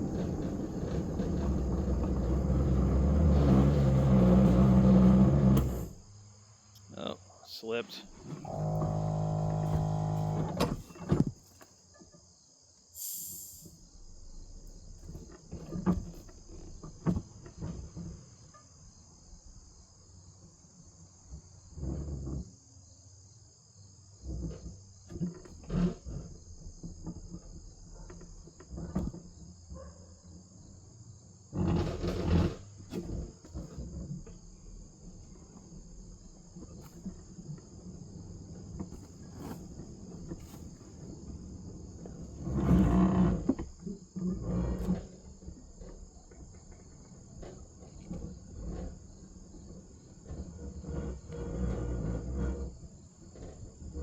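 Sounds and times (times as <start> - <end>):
knocks and clunks: 0.0 - 6.1, 8.0 - 11.7, 14.7 - 18.2, 24.3 - 29.5
insect chorus trilling: 5.8 - 31.6
short low hum: 8.0 - 10.6.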